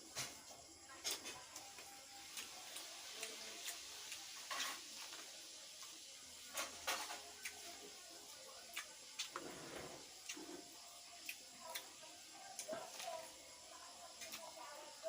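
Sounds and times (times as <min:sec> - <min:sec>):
chewing: 0:08.6 - 0:13.1.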